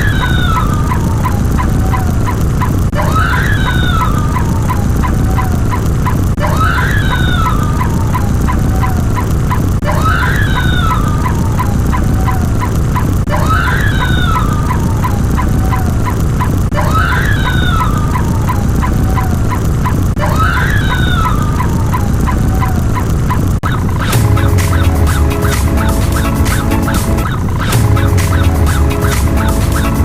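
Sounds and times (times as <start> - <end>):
warbling animal call: 0.0 - 30.0
fast regular ticking: 0.5 - 2.9, 4.0 - 6.4, 11.0 - 16.7, 17.8 - 20.2, 21.2 - 30.0.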